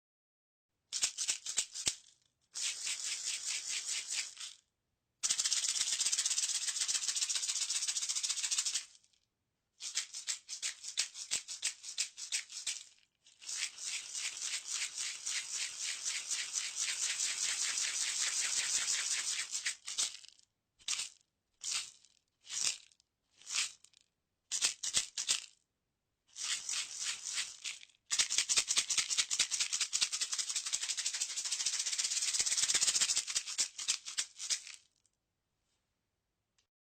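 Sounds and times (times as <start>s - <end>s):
maracas rattling: 0.9s - 2.0s, 9.9s - 20.3s, 24.5s - 25.5s, 26.4s - 34.8s.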